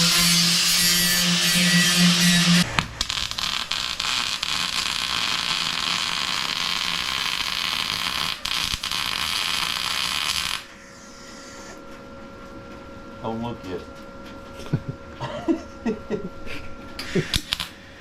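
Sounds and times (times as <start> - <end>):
arc welder crackling sizzle: 0.0 - 11.6, 16.5 - 18.0
faint hum: 0.0 - 18.0.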